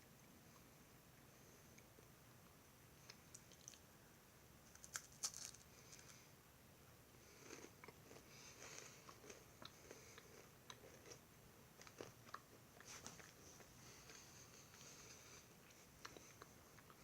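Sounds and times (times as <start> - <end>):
crunchy chewing: 4.7 - 6.2, 7.3 - 17.0.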